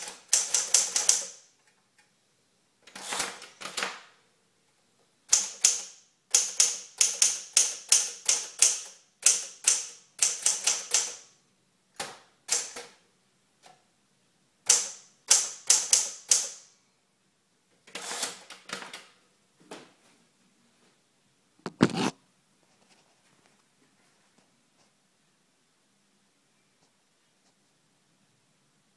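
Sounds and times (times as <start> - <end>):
typewriter keystrikes: 0.0 - 1.4, 5.3 - 11.3, 14.7 - 16.6.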